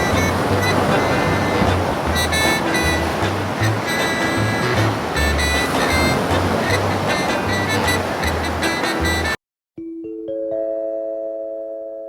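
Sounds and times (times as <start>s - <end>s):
crossing warning bell: 0.0s - 6.8s
train passing: 0.0s - 9.1s.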